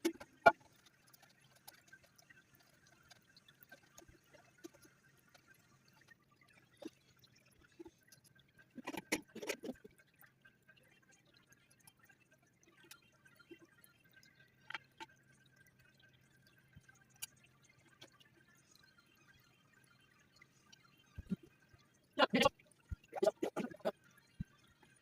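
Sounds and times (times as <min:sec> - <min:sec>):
small clicks and knocks: 0:00.0 - 0:06.1.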